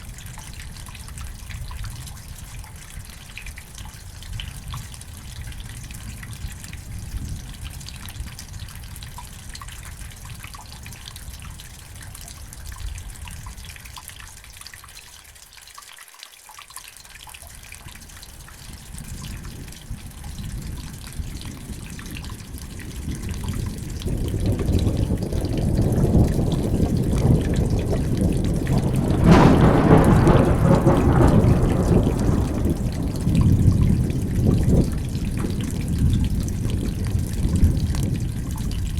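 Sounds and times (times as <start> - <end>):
dripping water: 0.0 - 38.9
steady rain: 0.0 - 38.9
rolling thunder: 18.8 - 38.9.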